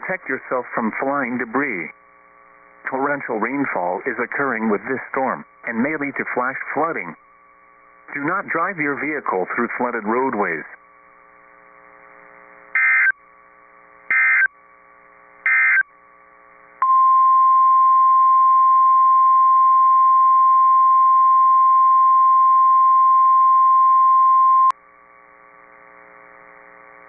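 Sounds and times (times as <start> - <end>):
digital data tone bursts: 12.8 - 13.2, 14.1 - 14.5, 15.5 - 15.8.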